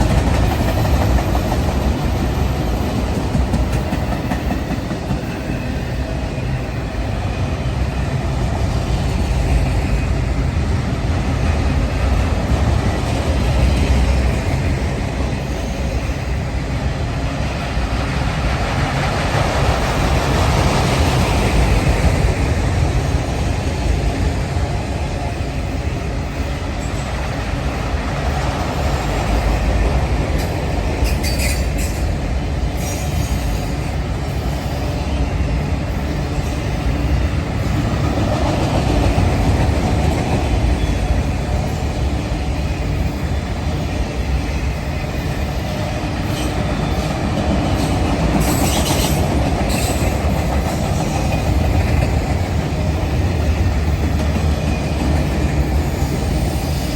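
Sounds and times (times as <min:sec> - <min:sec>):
freight train wheels rumbling: 0:00.0 - 0:56.9
train wheel squeals: 0:12.9 - 0:16.7, 0:25.4 - 0:56.9.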